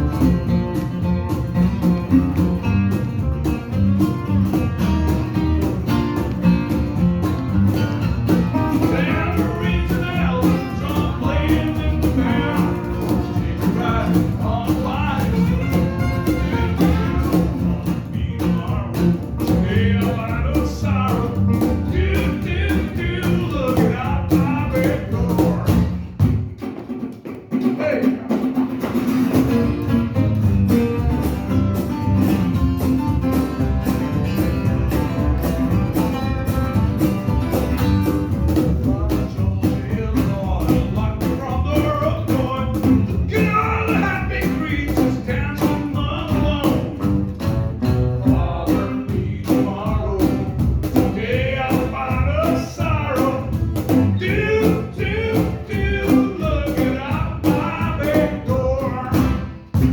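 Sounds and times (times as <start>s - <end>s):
live country-rock band: 0.0s - 59.9s
person singing: 8.8s - 26.0s, 38.8s - 46.9s, 48.2s - 53.5s, 54.1s - 59.5s.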